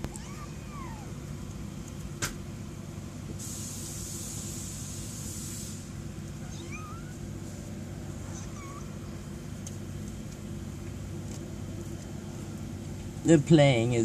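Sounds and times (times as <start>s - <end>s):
kittens mewing: 0.0s - 1.4s, 6.3s - 7.4s, 8.1s - 9.3s
low background rumble: 0.0s - 14.0s.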